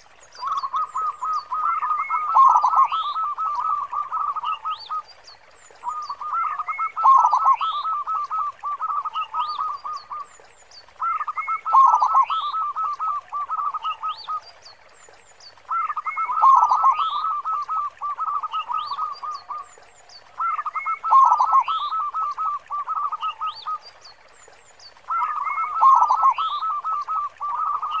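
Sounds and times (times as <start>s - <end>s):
dove cooing: 0.4s - 5.0s, 15.7s - 19.7s, 20.4s - 23.8s, 25.0s - 28.0s.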